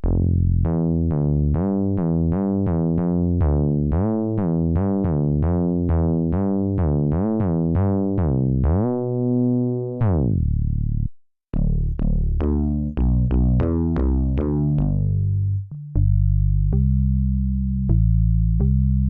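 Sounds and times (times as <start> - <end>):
plucked synth bass notes: 0.0 - 19.0.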